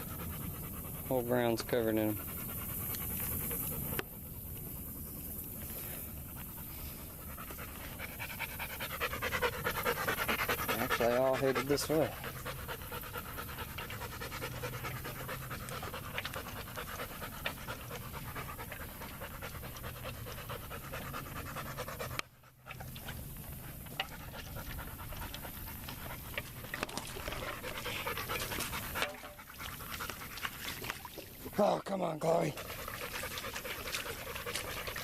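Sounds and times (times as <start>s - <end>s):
dog panting: 0.0s - 35.0s.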